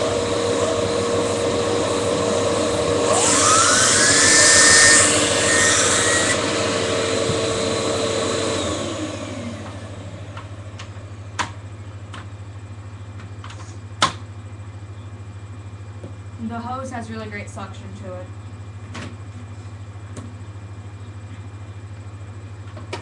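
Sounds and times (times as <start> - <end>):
vacuum cleaner running: 0.0 - 11.3.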